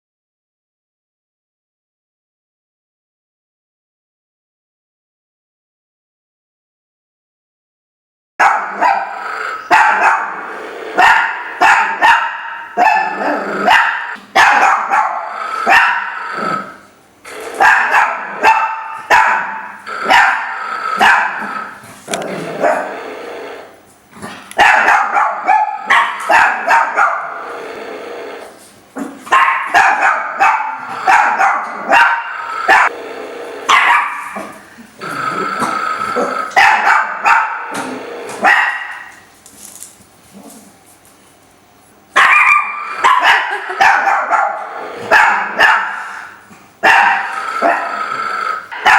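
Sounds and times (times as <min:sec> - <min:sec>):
small dog barking and growling: 0:08.4 - 0:16.7, 0:17.3 - 0:23.4, 0:24.2 - 0:27.7, 0:29.0 - 0:39.2, 0:42.2 - 0:48.9.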